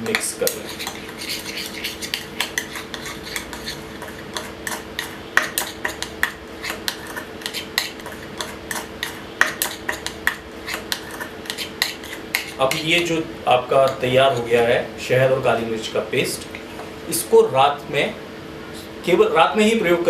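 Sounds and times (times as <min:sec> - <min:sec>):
spoon stirring and scraping container: 0:00.0 - 0:12.9
faint steady hum: 0:00.0 - 0:20.0.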